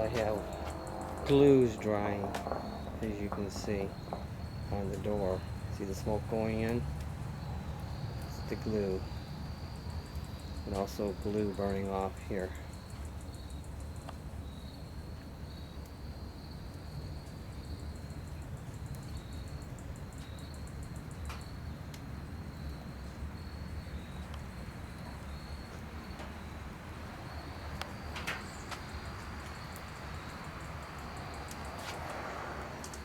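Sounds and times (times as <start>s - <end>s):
steady low rumble: 0.0s - 12.4s
insects trilling: 0.0s - 33.0s.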